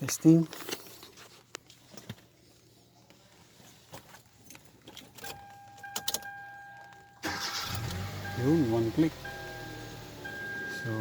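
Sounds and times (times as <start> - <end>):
car engine cranking and starting: 7.2 - 11.0.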